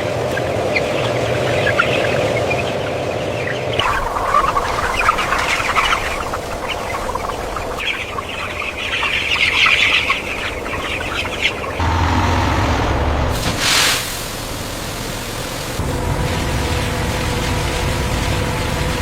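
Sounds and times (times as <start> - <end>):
chickens clucking and cheeping: 0.2 - 12.2
steady low hum: 3.0 - 19.0.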